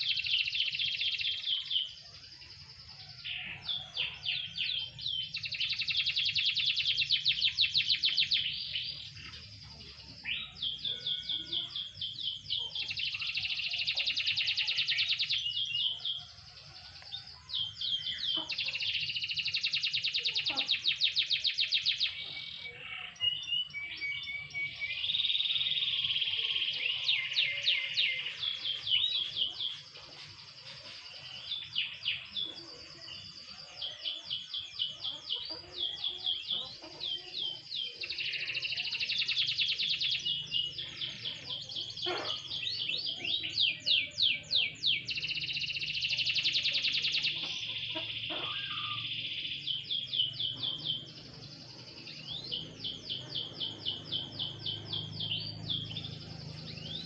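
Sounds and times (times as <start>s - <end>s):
canary singing trills: 0.0s - 57.0s.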